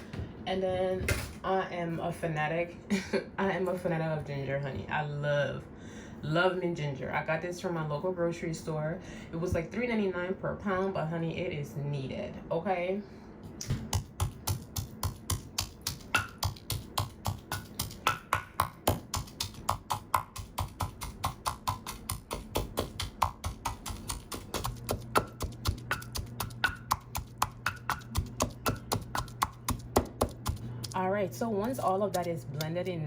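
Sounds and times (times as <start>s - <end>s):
pestle pounding in a mortar: 13.8s - 32.9s.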